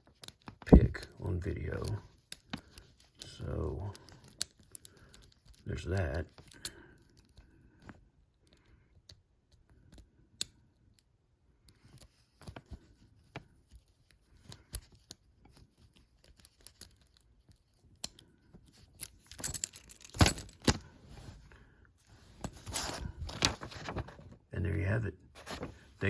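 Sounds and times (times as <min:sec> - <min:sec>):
lock pick clicking and scraping: 0:00.0 - 0:00.8, 0:01.7 - 0:20.8
padlock rattling: 0:01.7 - 0:07.4, 0:15.8 - 0:20.8.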